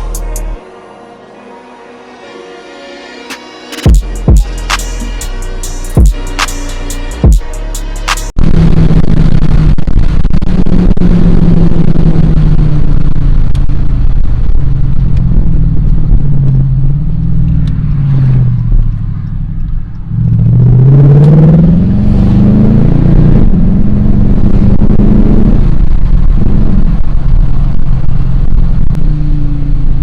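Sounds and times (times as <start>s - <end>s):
car engine revving: 0.0s - 0.6s, 3.3s - 30.0s.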